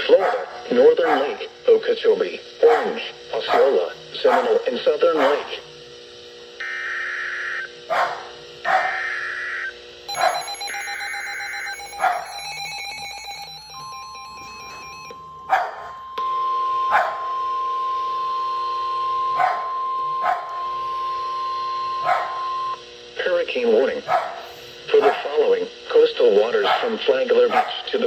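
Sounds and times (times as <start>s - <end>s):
dog barking: 0.0s - 1.4s, 2.6s - 4.6s, 5.2s - 5.5s, 7.9s - 9.1s, 15.5s - 16.0s, 16.9s - 17.3s, 19.4s - 20.5s, 22.0s - 22.4s, 24.0s - 25.3s, 26.6s - 27.9s
steady alarm tone: 0.0s - 28.0s.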